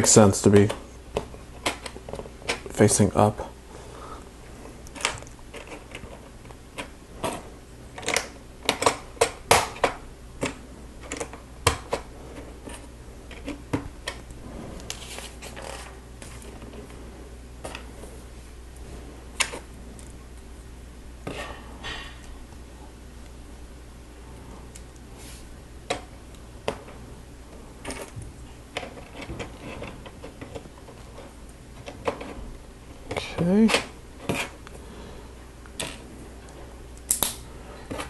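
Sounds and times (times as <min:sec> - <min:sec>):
plastic pieces snapping together: 0:08.0 - 0:12.1, 0:37.0 - 0:38.0
rustling: 0:12.0 - 0:20.5.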